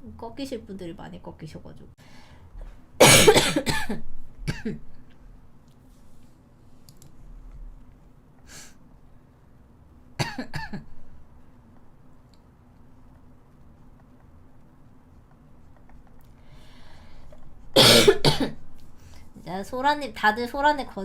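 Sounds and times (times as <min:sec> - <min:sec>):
woman coughing: 0:03.0 - 0:04.9, 0:10.2 - 0:10.9, 0:17.8 - 0:18.6.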